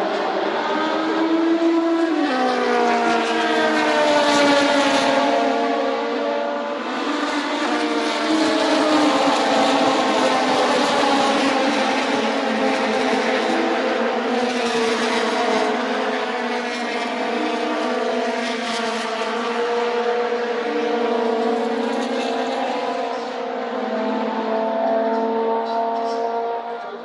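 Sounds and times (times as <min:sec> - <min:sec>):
racing car engines at high revs: 0:00.0 - 0:27.0.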